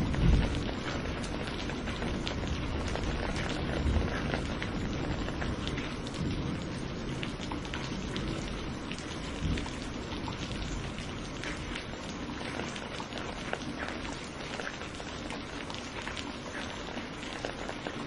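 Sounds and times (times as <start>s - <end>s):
thunder rumble: 0.0s - 11.8s
rain drops ticking: 0.0s - 18.0s.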